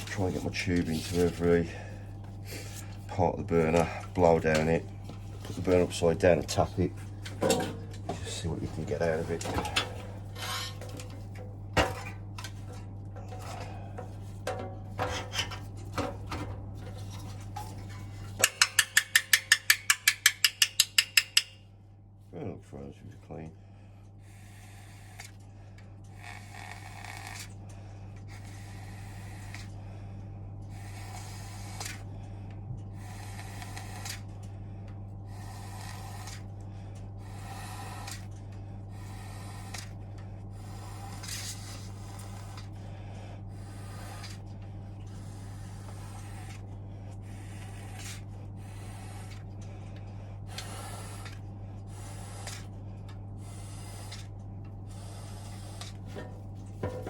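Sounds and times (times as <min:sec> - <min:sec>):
brush scrubbing metal parts: 0:00.0 - 0:01.7, 0:02.6 - 0:21.6, 0:55.0 - 0:57.0
steady low hum: 0:00.0 - 0:57.0.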